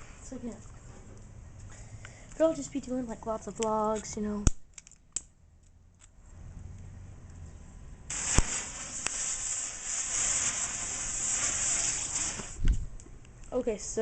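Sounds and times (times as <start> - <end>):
fuse burning with a hiss: 8.1 - 13.0.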